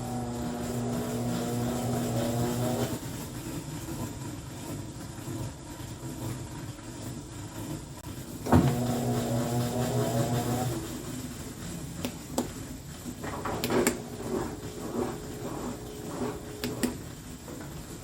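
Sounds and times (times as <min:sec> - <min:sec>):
small electric motor whining: 0:00.0 - 0:03.0.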